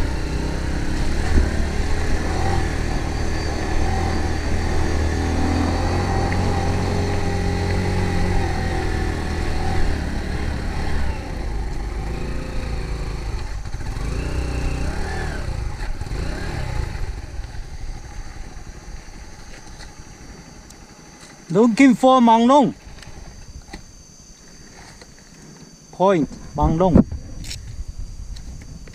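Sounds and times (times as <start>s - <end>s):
vehicle engine running: 0.0s - 21.4s.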